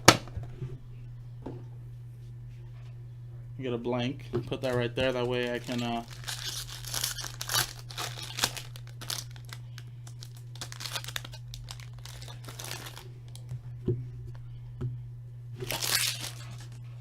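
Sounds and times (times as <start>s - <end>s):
low electrical hum: 0.0s - 17.0s
plastic wrapper crinkling: 4.6s - 13.6s, 15.6s - 16.8s.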